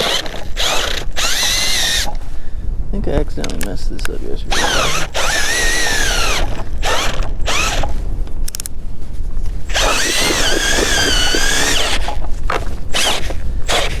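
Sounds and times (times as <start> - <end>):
power ice auger motor whining: 0.0 - 2.2, 4.5 - 8.0, 9.7 - 14.0.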